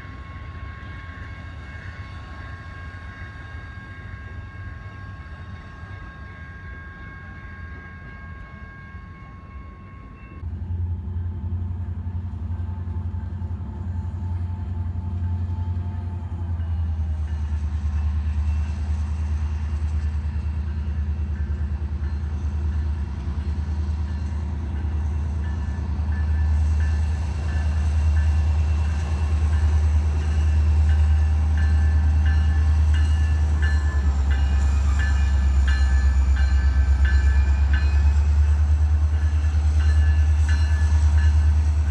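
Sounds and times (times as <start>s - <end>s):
train rumbling past: 0.0s - 41.9s.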